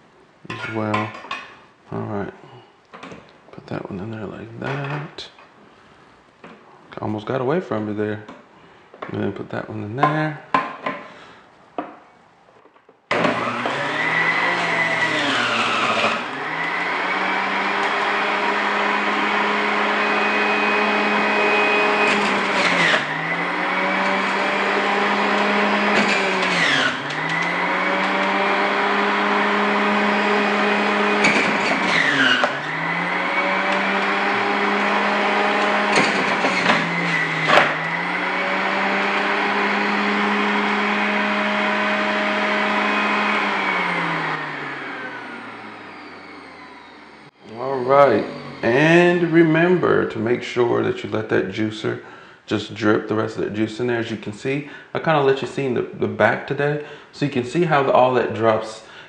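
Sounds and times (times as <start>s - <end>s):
electric juicer motor humming: 13.1s - 49.4s.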